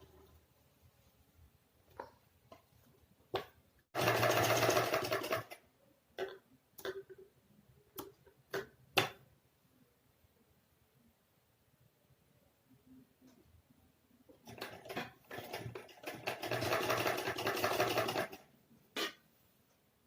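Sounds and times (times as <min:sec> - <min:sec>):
sewing machine running: 0:04.0 - 0:05.6, 0:14.5 - 0:18.4.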